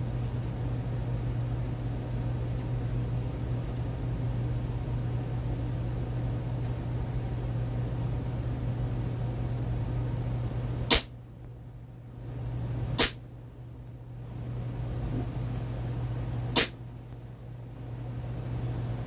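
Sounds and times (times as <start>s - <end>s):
steady low hum: 0.0s - 19.0s
airsoft pistol firing: 10.9s - 11.1s, 13.0s - 13.2s, 16.6s - 16.8s.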